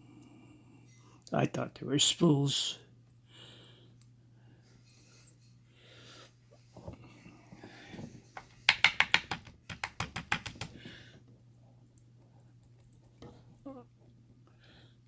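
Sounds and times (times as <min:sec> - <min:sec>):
steady low hum: 0:00.0 - 0:08.7
lock parts clicking and tapping: 0:08.4 - 0:10.8.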